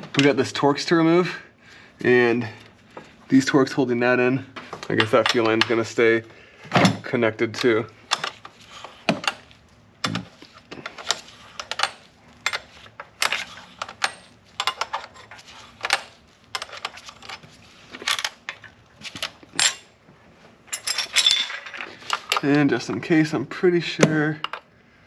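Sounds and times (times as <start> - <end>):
metal hand tools clinking: 20.7 - 22.6.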